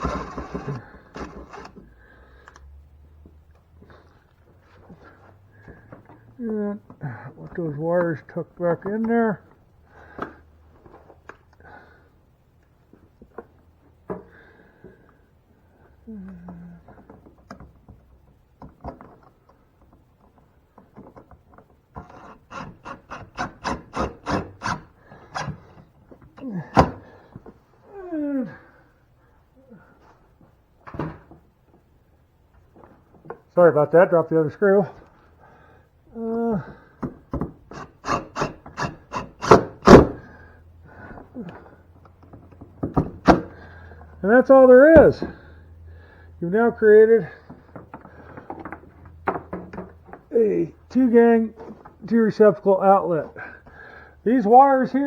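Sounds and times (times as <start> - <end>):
screwdriver rasping strokes: 0.0 - 1.8, 22.0 - 25.7, 37.7 - 40.1.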